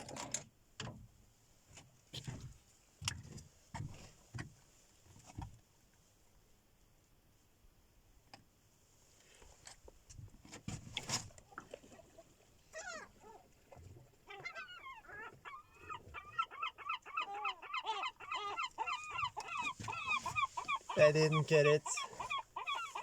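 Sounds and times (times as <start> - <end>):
gulls calling: 14.3 - 23.0.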